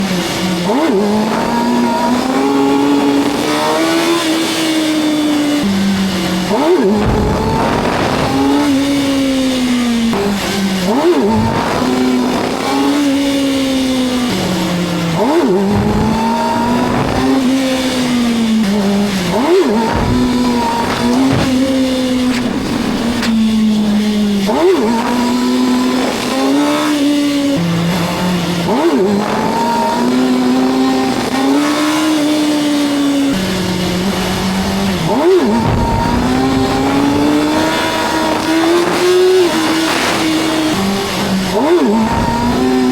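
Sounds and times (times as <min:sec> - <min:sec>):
motorcycle engine revving: 0:00.0 - 0:42.9.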